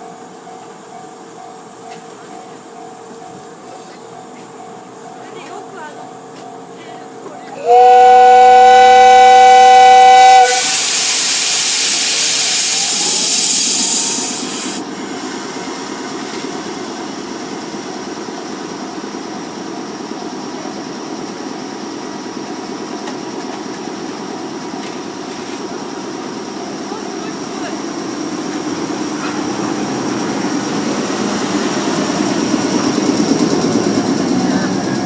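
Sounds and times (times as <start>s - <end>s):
train rumbling: 0.0s - 35.0s
train horn two-note chord: 7.6s - 10.6s
loud hiss: 7.7s - 16.2s.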